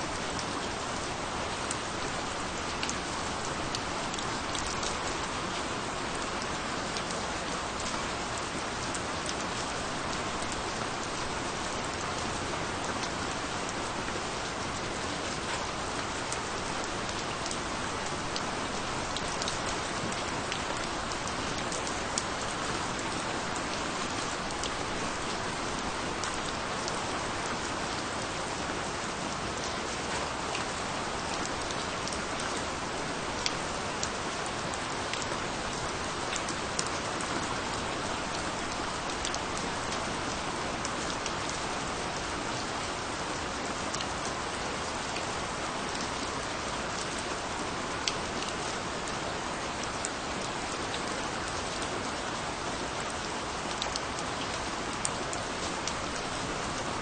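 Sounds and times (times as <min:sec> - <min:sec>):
rain falling: 0:00.0 - 0:57.0.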